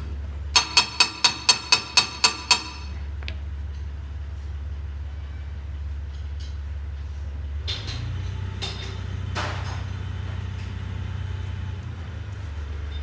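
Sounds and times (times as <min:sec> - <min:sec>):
loader engine droning: 0:02.8 - 0:13.0.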